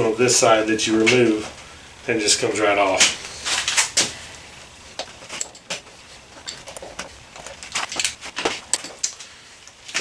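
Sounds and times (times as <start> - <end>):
hand tools clicking and knocking: 5.0 - 9.2.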